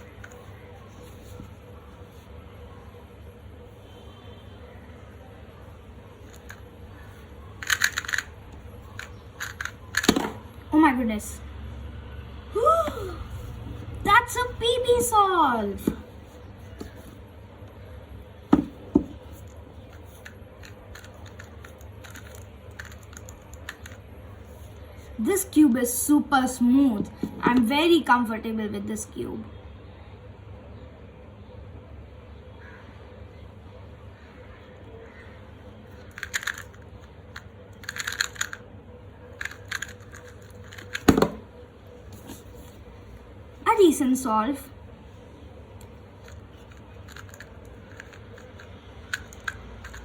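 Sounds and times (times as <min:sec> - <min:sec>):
plastic clicks of puzzle cube turning: 0:06.2 - 0:10.3, 0:19.3 - 0:24.0, 0:35.9 - 0:38.6, 0:39.4 - 0:41.4, 0:46.2 - 0:50.0.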